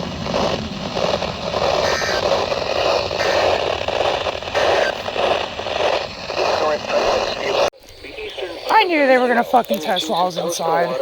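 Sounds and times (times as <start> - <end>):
radio static hissing and crackling: 0.0 - 11.0
muffled broadcast voice: 4.6 - 5.3, 6.4 - 11.0.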